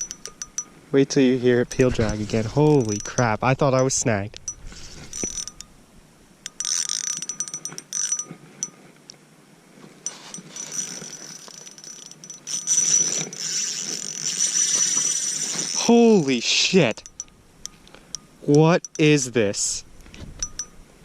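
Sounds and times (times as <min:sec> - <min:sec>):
fishing reel drag peeling out: 0:04.7 - 0:05.7, 0:06.4 - 0:08.3, 0:10.0 - 0:16.3.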